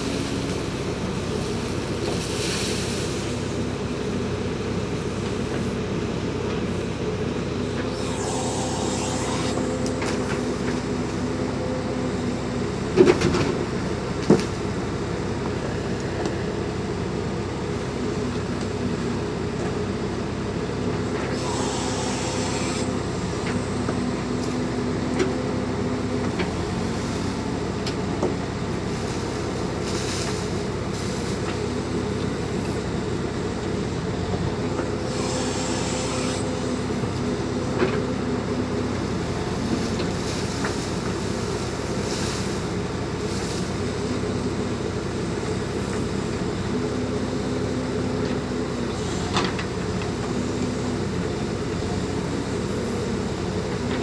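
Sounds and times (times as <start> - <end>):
diesel engine running: 0.0 - 54.0
hiss: 2.2 - 3.4, 21.4 - 23.1, 35.1 - 37.0, 39.8 - 44.3.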